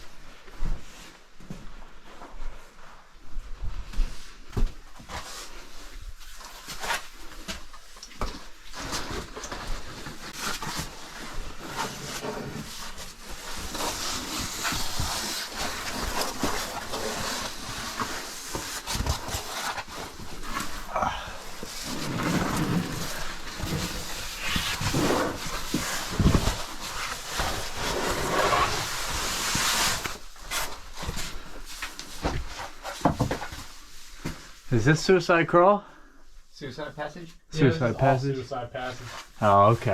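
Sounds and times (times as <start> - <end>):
bodies scraping against rock: 13.6 - 33.5
effortful breathing: 20.8 - 22.2.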